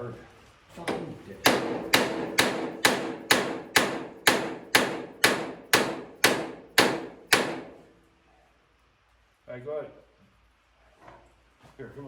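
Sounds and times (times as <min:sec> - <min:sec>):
hammer on ringing steel: 0:01.5 - 0:07.8.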